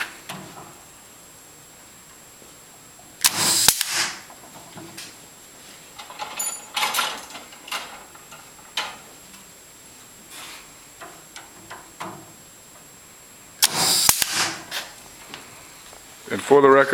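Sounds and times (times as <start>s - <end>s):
sharp click: 3.2s - 4.2s, 13.6s - 14.9s.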